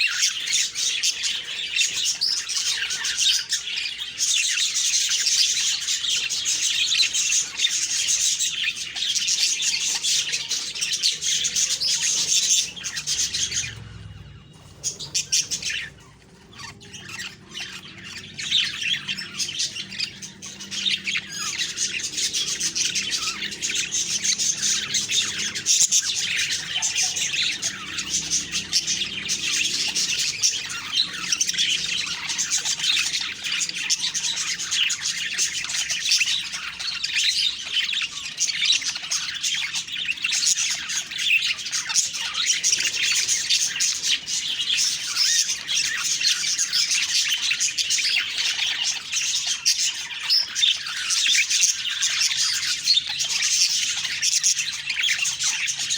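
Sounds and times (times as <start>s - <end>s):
budgerigars chirping and chattering: 0.0s - 55.9s.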